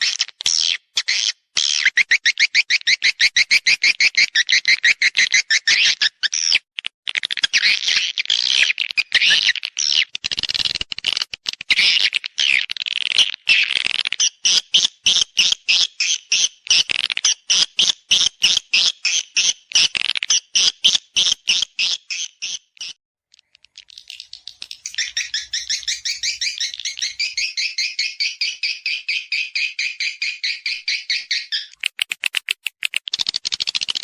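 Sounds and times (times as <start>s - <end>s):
swiftlet calls twittering: 23.4s - 33.3s.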